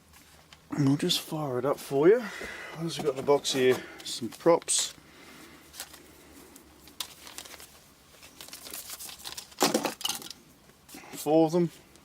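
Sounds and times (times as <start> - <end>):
packaging crinkling and rustling: 5.6 - 10.4.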